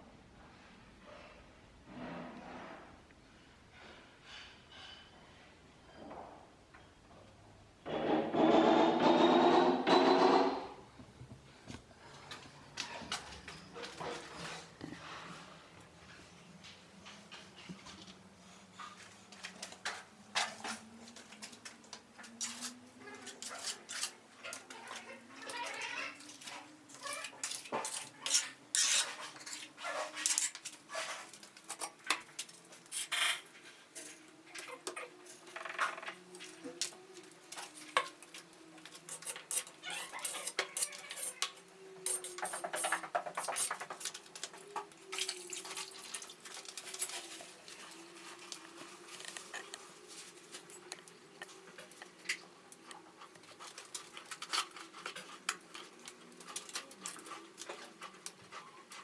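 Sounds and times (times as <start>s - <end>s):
metal trowel scraping plaster: 22.4s - 24.2s, 27.2s - 32.0s, 39.1s - 44.0s.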